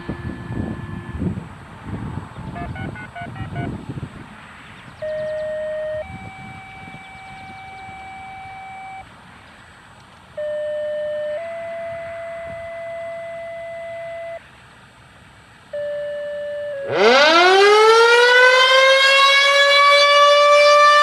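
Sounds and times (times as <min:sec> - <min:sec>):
two-tone radio paging tones: 0:00.0 - 0:01.3, 0:02.5 - 0:03.9, 0:05.0 - 0:09.0, 0:15.7 - 0:16.9
touch-tone style beeps: 0:02.6 - 0:03.8, 0:05.0 - 0:09.0.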